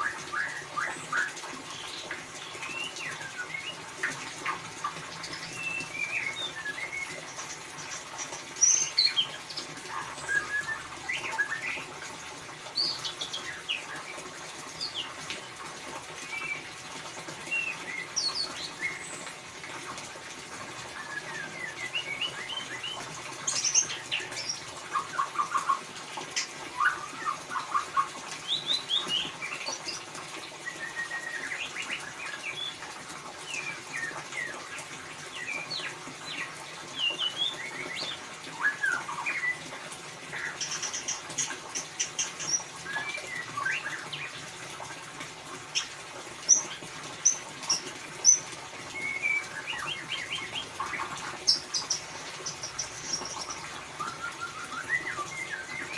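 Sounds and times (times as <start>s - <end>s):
bird chirping and trilling: 5.2s - 11.9s, 17.4s - 19.3s, 20.9s - 25.8s, 26.4s - 32.8s, 35.4s - 39.6s, 40.4s - 44.4s, 45.7s - 55.9s.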